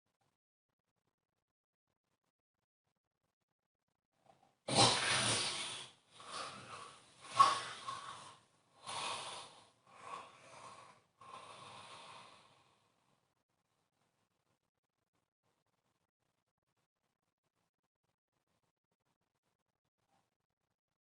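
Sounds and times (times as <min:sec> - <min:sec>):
person snoring and snorting: 0:04.7 - 0:12.8.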